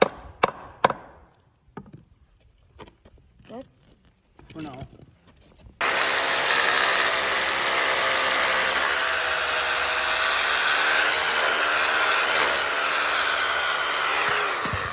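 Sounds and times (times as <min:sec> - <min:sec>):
power tool motor whining: 0:05.8 - 0:14.9.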